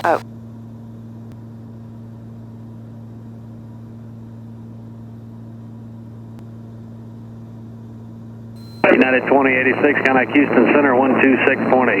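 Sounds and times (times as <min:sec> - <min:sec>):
aircraft engines droning: 0:08.6 - 0:12.0.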